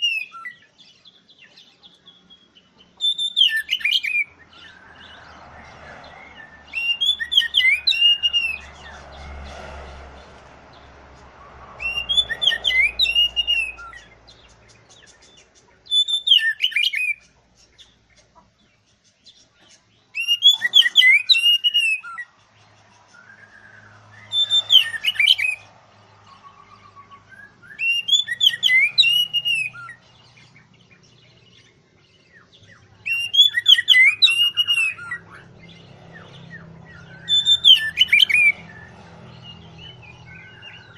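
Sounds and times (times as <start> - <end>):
bird singing whistled phrases: 0.0 - 0.7, 3.0 - 4.7, 6.1 - 8.8, 11.8 - 14.2, 15.8 - 17.2, 20.1 - 22.3, 23.2 - 25.7, 26.3 - 30.2, 33.0 - 35.5, 36.5 - 39.0, 39.8 - 40.9.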